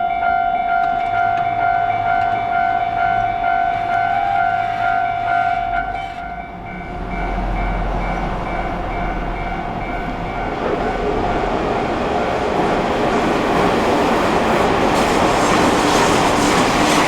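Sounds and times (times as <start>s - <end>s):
held high tone: 0.0s - 11.0s
level crossing warning bells: 0.0s - 14.8s
electric train running: 0.0s - 17.0s.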